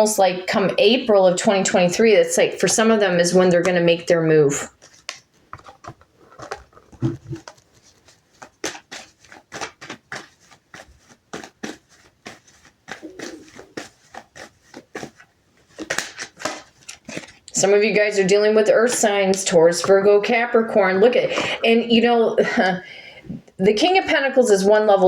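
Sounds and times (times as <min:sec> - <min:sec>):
cards clicking and flicking: 0:04.8 - 0:17.5.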